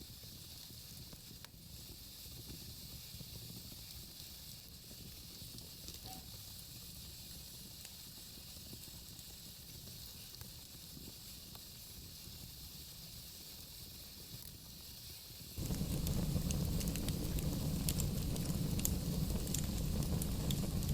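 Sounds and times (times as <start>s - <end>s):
wood fire hissing: 0.0s - 20.9s
logs crackling: 15.6s - 20.9s.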